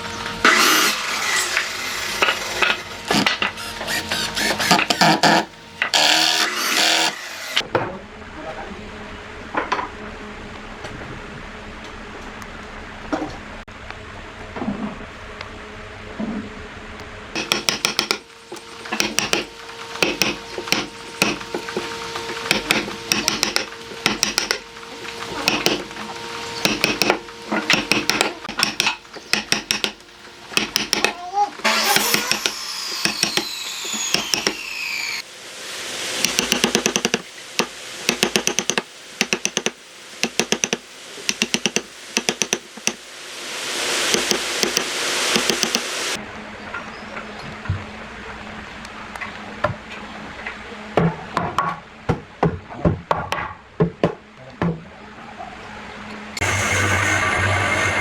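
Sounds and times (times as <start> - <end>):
rapid sharp clicking taps: 36.2 - 43.0.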